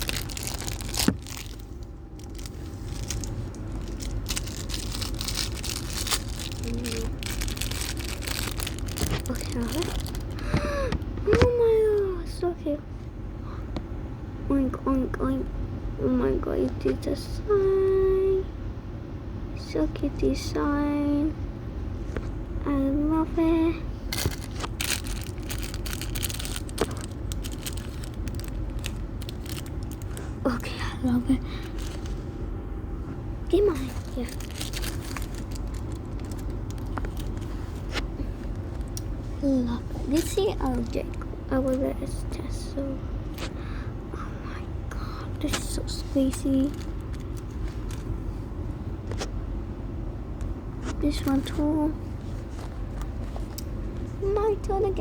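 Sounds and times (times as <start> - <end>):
plastic packaging crinkling and tearing: 0.0 - 10.6, 24.1 - 32.2, 33.6 - 39.0, 40.1 - 41.9, 45.4 - 48.2
steady low hum: 0.0 - 55.0.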